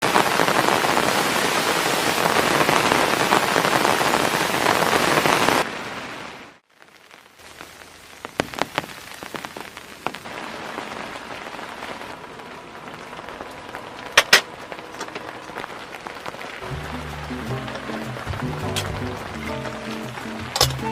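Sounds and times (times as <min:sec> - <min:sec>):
heavy rain: 0:00.0 - 0:20.9
raindrops tapping: 0:06.8 - 0:20.9.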